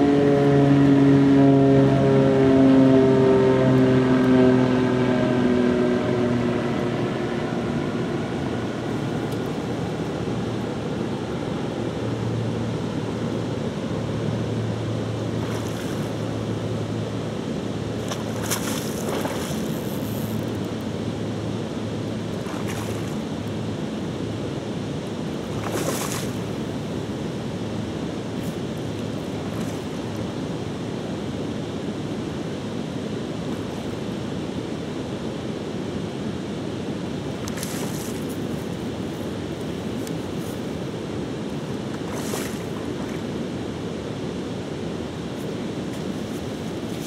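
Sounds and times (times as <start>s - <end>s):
pitched engine hum: 0.0s - 47.0s
river water rushing: 3.0s - 47.0s.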